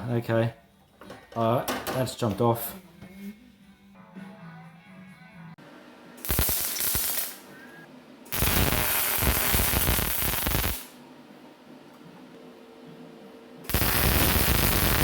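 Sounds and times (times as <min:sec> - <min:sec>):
welding arc crackling: 0:06.2 - 0:07.5, 0:08.3 - 0:11.0, 0:13.7 - 0:15.0.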